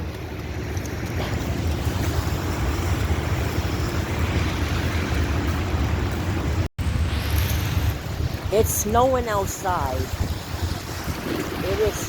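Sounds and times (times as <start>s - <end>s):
wind buffeting microphone: 0.0s - 12.0s.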